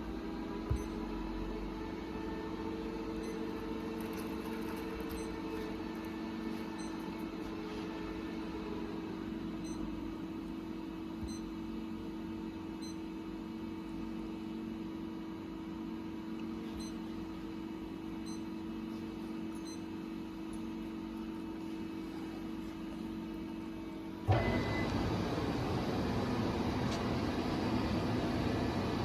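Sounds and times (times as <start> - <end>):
grinding machine humming: 24.3 - 29.0.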